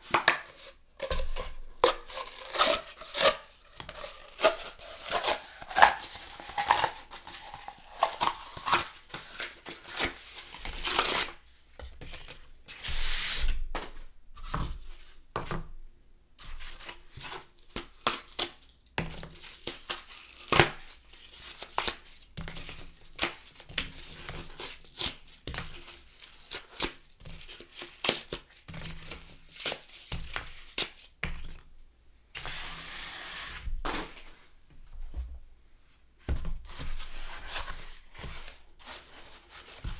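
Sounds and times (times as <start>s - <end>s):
cardboard tearing: 1.0s - 7.0s.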